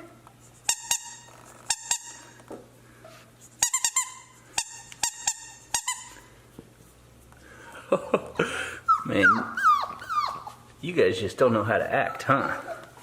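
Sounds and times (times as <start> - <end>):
dog toy squeaking: 0.7 - 2.2, 3.6 - 6.2, 8.9 - 10.5.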